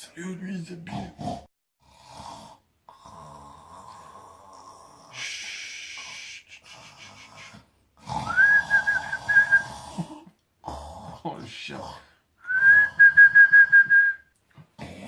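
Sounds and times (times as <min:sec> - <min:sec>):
man snoring: 0:00.9 - 0:13.5
long hissing breath: 0:05.1 - 0:07.7.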